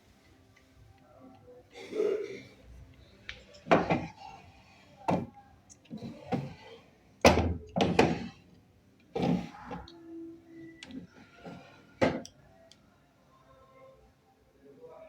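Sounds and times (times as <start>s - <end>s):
sewing machine knocks and thunks: 7.2s - 8.3s.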